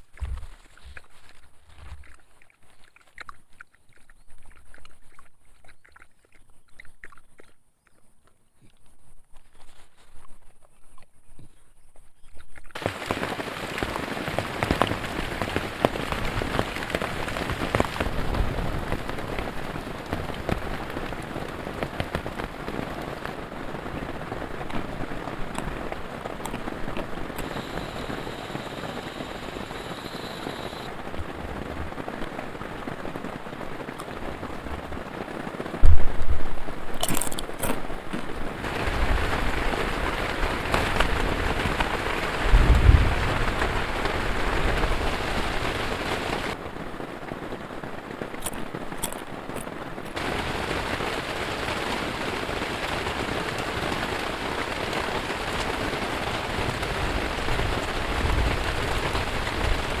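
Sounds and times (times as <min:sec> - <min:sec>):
heavy rain falling: 0:12.8 - 1:00.0
thunder boom: 0:42.5 - 0:44.0.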